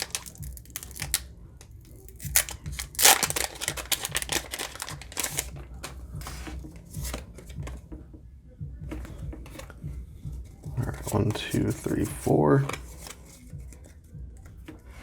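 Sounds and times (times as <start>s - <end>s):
foil wrapper crinkling: 0.0s - 1.2s, 1.9s - 5.5s.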